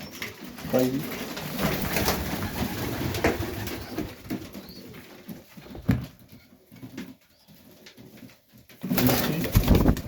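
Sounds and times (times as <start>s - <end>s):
pigeons cooing: 0.0s - 5.4s.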